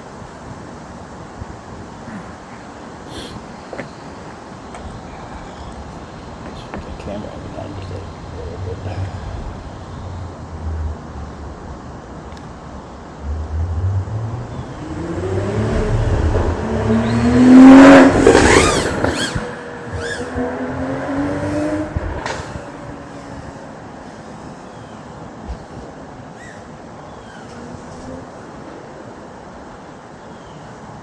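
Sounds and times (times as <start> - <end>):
quadcopter motors buzzing: 2.1 - 9.8, 14.6 - 26.7.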